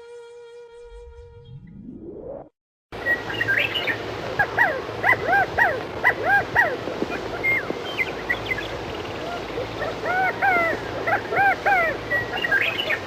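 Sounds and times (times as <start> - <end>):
rising whoosh: 0.8 - 2.6
noisy background: 3.0 - 13.0
quail calling: 3.0 - 13.0.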